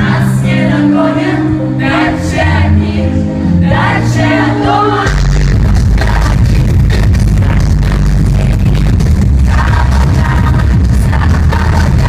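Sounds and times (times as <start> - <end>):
woman singing lead vocal: 0.0 - 12.0.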